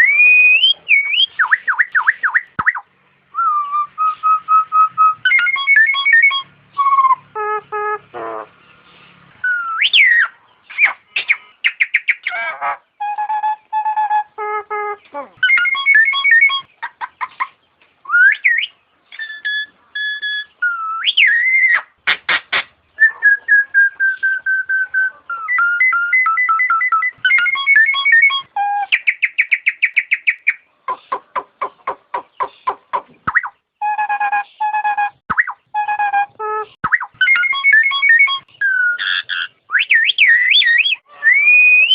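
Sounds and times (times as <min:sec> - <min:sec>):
myna whistled calls: 0:00.0 - 0:41.9
sharp bird clicks: 0:29.0 - 0:33.6.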